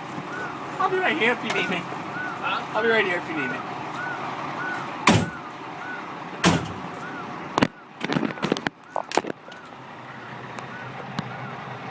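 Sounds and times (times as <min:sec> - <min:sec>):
heavy door slams: 0:05.1 - 0:05.4, 0:06.4 - 0:06.8.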